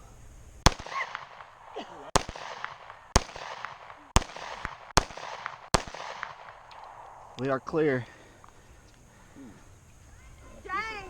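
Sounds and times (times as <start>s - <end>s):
pistol shots with echo: 0.6s - 8.8s.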